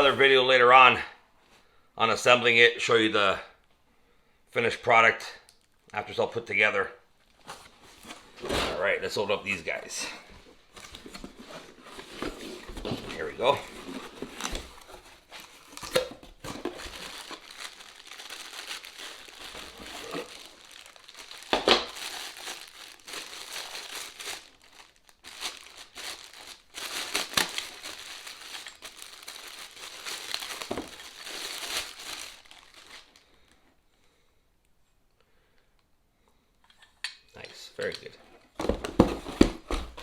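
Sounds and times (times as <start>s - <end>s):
packaging crinkling and tearing: 10.7s - 33.6s.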